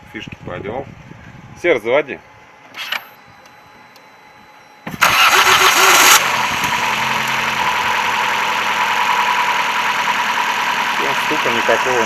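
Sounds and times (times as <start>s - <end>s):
starter cranking: 4.9s - 7.4s
car engine idling: 5.0s - 12.0s.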